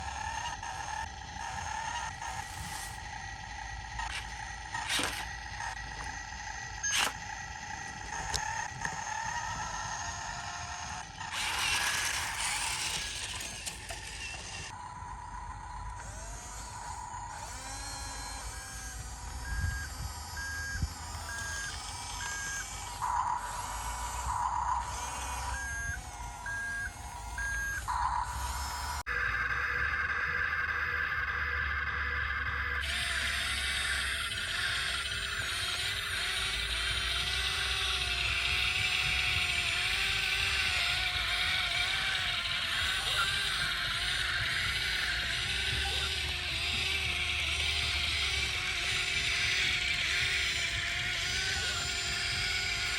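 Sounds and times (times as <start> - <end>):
excavator engine running low: 0.0 - 52.9
sharp clicks: 3.9 - 14.8.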